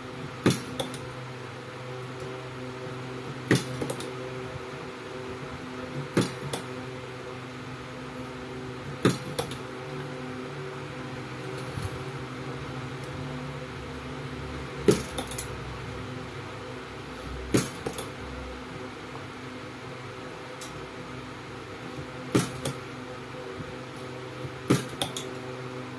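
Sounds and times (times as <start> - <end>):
electrical hum: 0.0 - 25.9
spot welder snaps: 0.4 - 1.1, 3.5 - 4.1, 6.1 - 6.7, 17.5 - 18.1, 22.3 - 22.8, 24.6 - 25.3.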